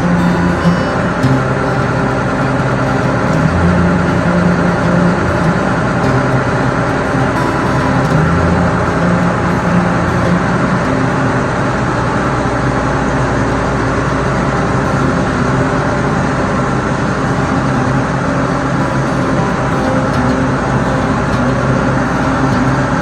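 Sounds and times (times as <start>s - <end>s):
farm machinery engine running: 0.0s - 23.0s.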